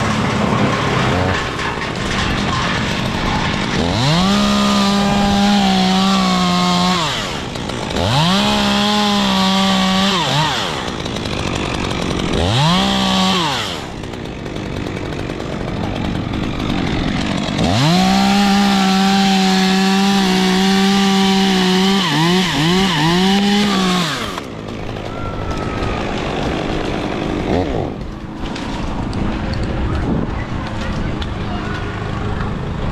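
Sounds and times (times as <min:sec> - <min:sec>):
chainsaw revving and idling: 0:00.0 - 0:29.9.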